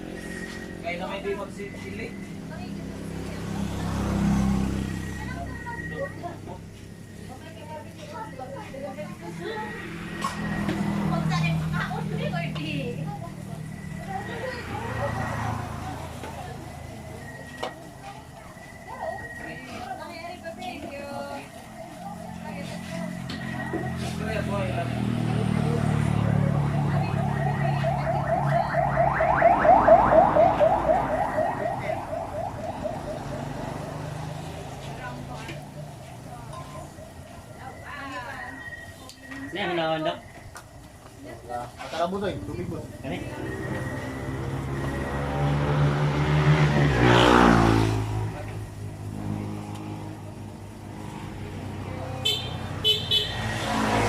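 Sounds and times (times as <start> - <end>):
vehicle engine passing: 0.0 - 38.8, 41.2 - 54.0
electronic alarm whooping: 26.4 - 34.2.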